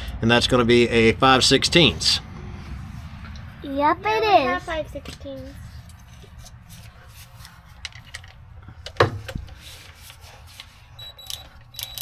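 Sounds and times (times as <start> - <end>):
low rumble: 0.0 - 8.9
hand tools clicking and clinking: 7.3 - 12.0.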